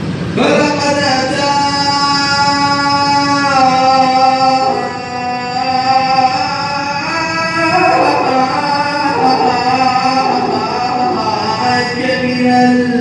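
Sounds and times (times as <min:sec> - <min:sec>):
man singing a devotional hymn: 0:00.4 - 0:13.0.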